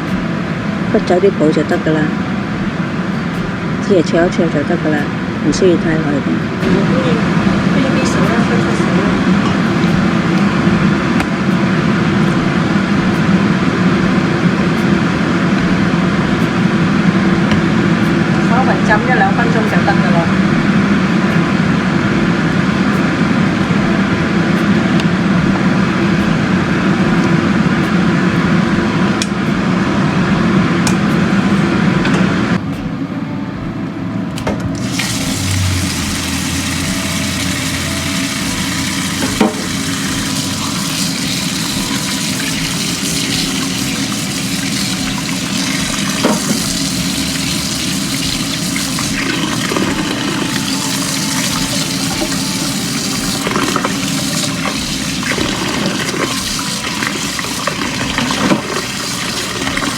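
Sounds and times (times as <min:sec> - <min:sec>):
water running and splashing: 0:34.8 - 0:59.9.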